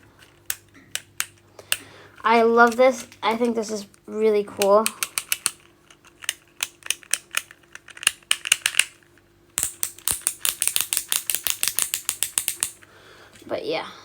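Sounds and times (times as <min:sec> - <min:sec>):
plastic fidget clicking: 0:00.3 - 0:01.8, 0:04.6 - 0:09.0, 0:09.6 - 0:12.9.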